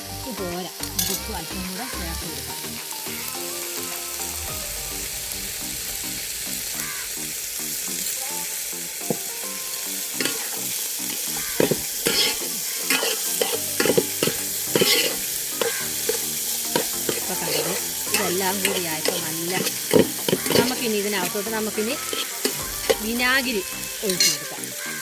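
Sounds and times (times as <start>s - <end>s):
pickle sizzling in oil: 0.0s - 25.0s
spoon scraping and knocking pan: 10.2s - 10.6s, 11.5s - 20.8s, 22.0s - 23.1s.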